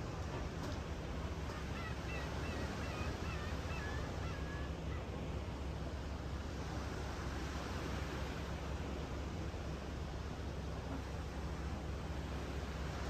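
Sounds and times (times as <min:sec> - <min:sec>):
sea waves washing ashore: 0:00.0 - 0:13.0
bird calls: 0:01.4 - 0:05.2.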